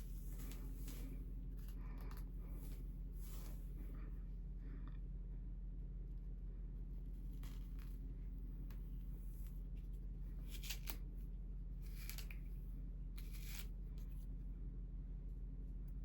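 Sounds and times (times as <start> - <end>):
hair being brushed: 0.0 - 4.0
steady low hum: 0.0 - 16.0.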